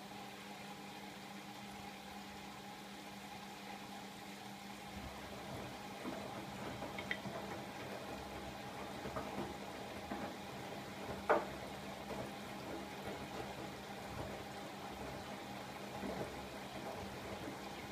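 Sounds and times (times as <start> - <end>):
water sloshing in drum: 4.8 - 17.9.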